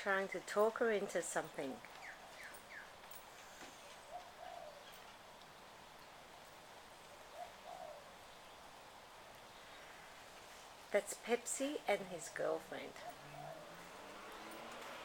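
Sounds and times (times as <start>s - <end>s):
background hiss: 0.0s - 15.0s
dove cooing: 2.0s - 5.3s, 7.1s - 8.5s, 12.8s - 14.7s.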